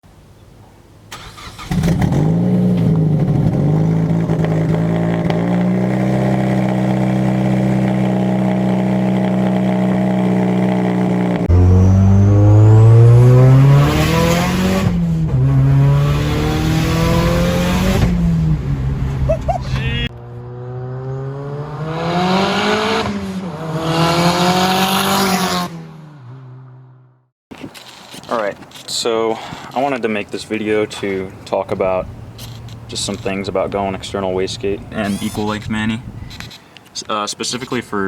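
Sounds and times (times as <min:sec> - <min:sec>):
car engine starting: 0:01.1 - 0:26.6, 0:31.7 - 0:36.4
car engine revving: 0:01.2 - 0:19.4, 0:20.0 - 0:27.1
car engine idling: 0:01.4 - 0:11.5, 0:31.7 - 0:36.3.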